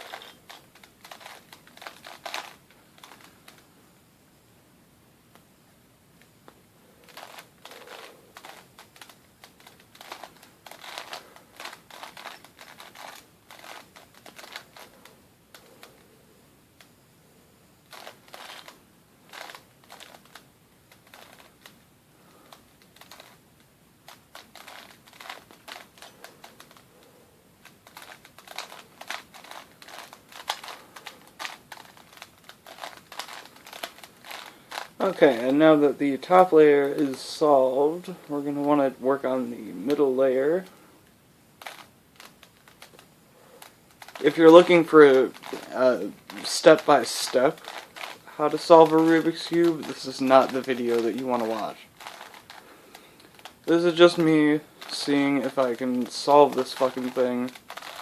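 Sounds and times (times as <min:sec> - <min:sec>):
puzzle cube clicking: 0:00.0 - 0:03.6, 0:07.0 - 0:16.0, 0:17.9 - 0:21.8, 0:22.5 - 0:26.9, 0:27.6 - 0:35.5, 0:41.6 - 0:58.0.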